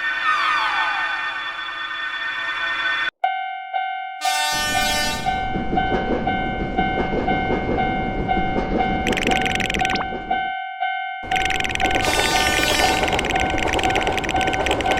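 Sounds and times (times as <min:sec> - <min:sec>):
railroad crossing alarm ringing: 0:00.0 - 0:14.9
train horn: 0:04.2 - 0:05.5, 0:12.0 - 0:13.2
train passing with rumbling clatter: 0:04.6 - 0:10.6, 0:11.2 - 0:14.9.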